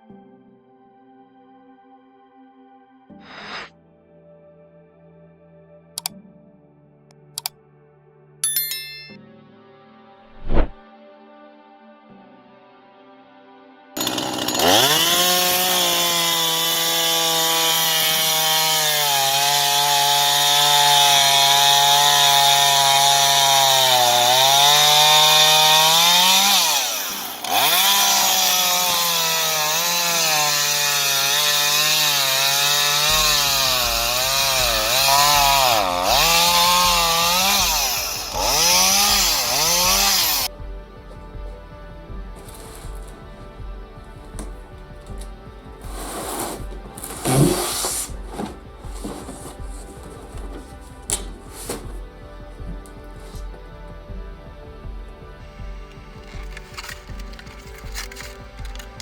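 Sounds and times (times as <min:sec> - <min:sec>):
chainsaw engine revving: 0:14.0 - 0:40.5, 0:46.1 - 0:49.4.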